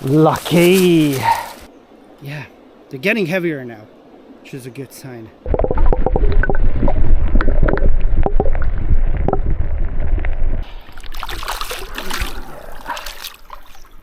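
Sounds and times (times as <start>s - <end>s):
wind rumble on microphone: 5.5s - 11.4s
water splashing and crackling: 5.5s - 14.0s.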